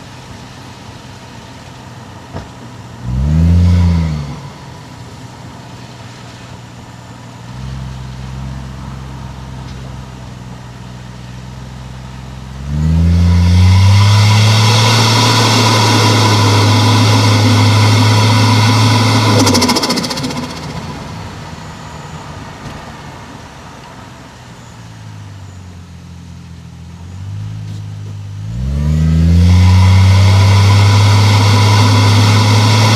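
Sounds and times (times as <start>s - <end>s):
car engine accelerating: 0.0s - 32.9s
turbo hiss: 12.6s - 22.4s, 29.0s - 32.9s
chattering turbo flutter: 12.7s - 22.4s, 29.1s - 32.9s.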